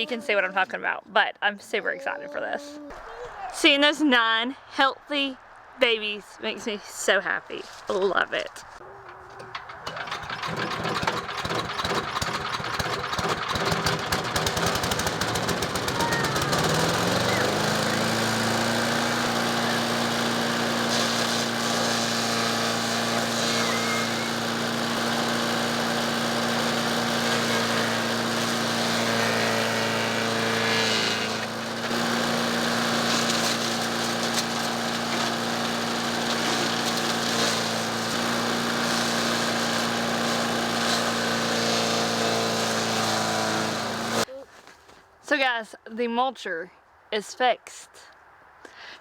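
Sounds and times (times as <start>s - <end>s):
small gasoline engine running: 9.4s - 44.3s.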